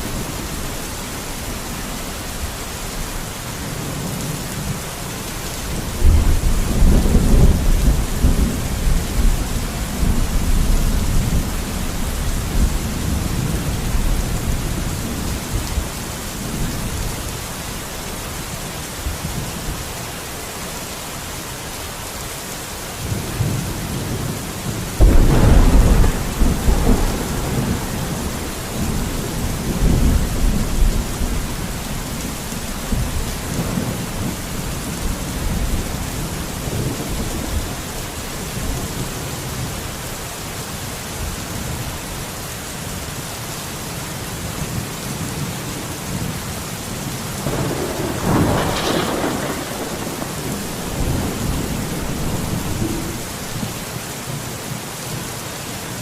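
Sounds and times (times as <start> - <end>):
thunder rumbling: 0.0 - 17.1, 23.0 - 39.7, 47.3 - 53.9
steady rain: 0.0 - 56.0.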